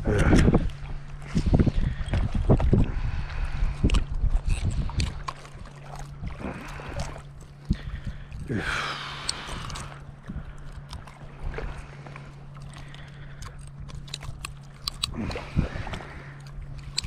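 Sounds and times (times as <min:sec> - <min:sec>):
wind rumbling on microphone: 0:00.0 - 0:11.9, 0:13.8 - 0:17.0
steady low hum: 0:00.0 - 0:17.0
water lapping against boat hull: 0:00.0 - 0:17.0.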